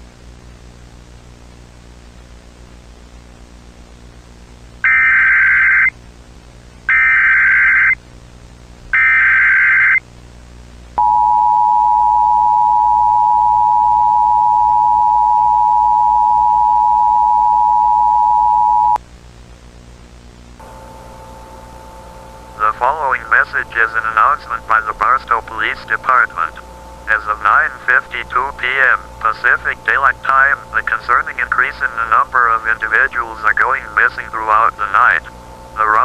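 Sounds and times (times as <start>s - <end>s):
static hiss: 0.0s - 4.8s, 19.0s - 36.0s
low hum: 10.2s - 36.0s
two-tone attention signal: 11.0s - 19.0s
data-header bursts: 22.6s - 36.0s.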